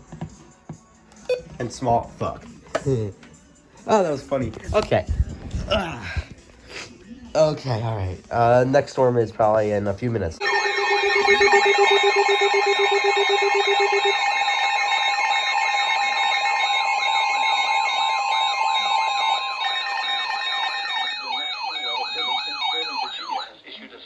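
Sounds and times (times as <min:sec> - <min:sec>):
warbling siren-like sweep: 0:10.4 - 0:23.4
pulsing electronic alarm tones: 0:10.4 - 0:23.5.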